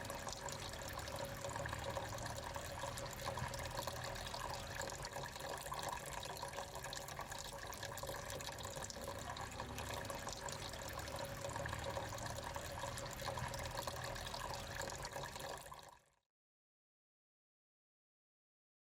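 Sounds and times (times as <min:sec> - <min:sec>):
small fountain water trickling: 0:00.0 - 0:16.2.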